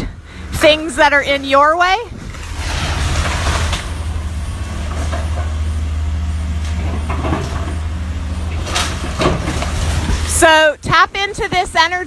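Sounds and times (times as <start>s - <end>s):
demolition machinery diesel rumble: 0.0s - 12.0s
debris knocking and crunching: 2.2s - 5.9s, 6.6s - 10.4s.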